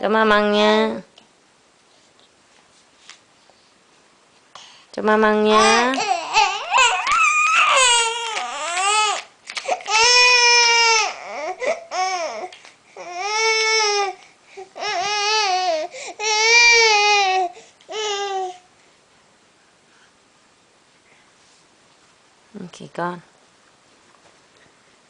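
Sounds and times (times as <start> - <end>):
baby crying: 5.6 - 18.6.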